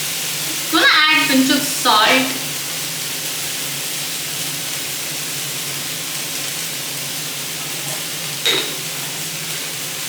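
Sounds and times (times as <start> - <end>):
food sizzling in a pan: 0.0 - 10.0.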